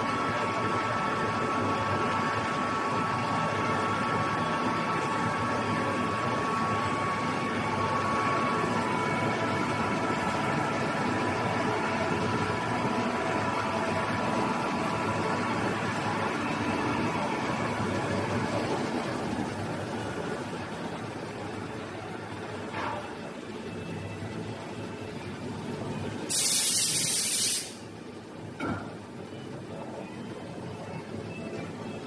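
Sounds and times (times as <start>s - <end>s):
welding machine hiss and hum: 26.2s - 28.0s.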